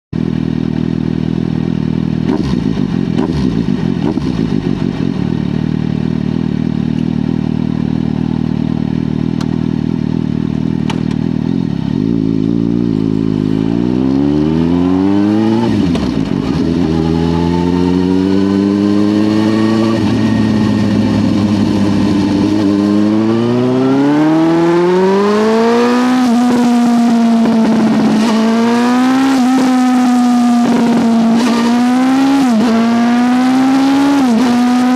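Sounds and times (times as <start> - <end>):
motorcycle engine revving: 0.2 - 34.9.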